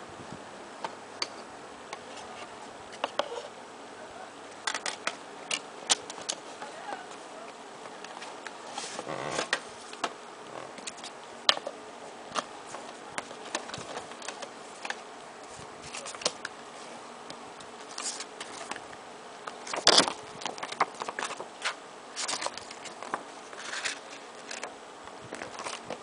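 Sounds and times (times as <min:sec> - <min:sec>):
plastic and paper rustling: 0:04.6 - 0:10.1, 0:12.3 - 0:17.0, 0:17.8 - 0:18.8, 0:19.5 - 0:26.0.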